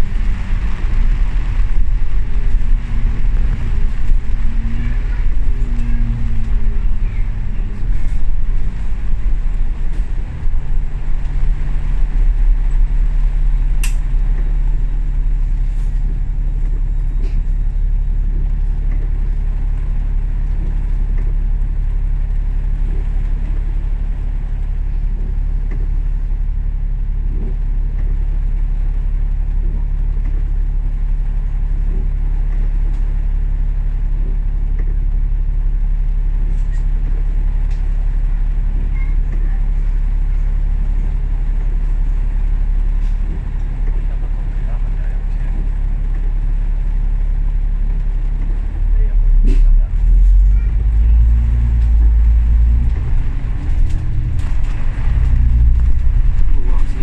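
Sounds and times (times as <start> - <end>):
bus engine hum: 0.0 - 57.0
road rumble: 0.0 - 57.0
sharp click: 13.8 - 14.1.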